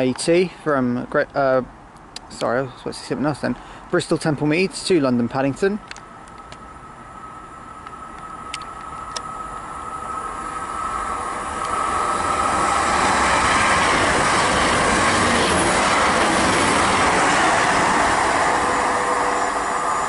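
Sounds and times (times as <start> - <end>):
train wheels rushing on rails: 4.2 - 20.0.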